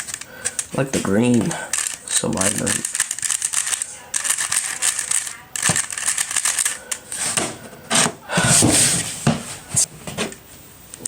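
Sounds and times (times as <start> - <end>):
speed cube plastic clicks: 0.0 - 7.2.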